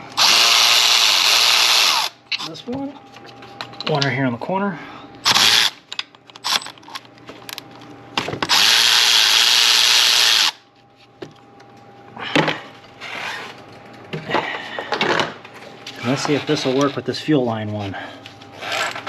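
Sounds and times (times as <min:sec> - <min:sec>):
power driver running: 0:00.0 - 0:02.6, 0:05.2 - 0:07.6, 0:08.3 - 0:10.6.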